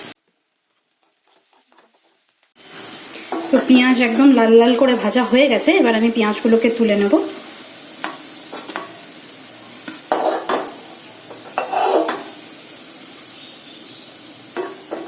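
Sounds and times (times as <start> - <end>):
onions sizzling in hot oil: 0.0 - 15.0
metal spoon scraping a pan: 1.0 - 3.8, 9.8 - 12.4.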